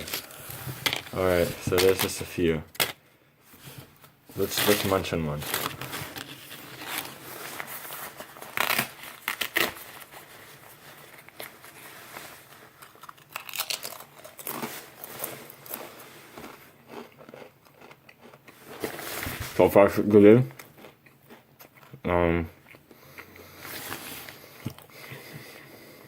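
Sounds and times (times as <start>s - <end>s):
crisps crunching: 4.3s - 24.8s.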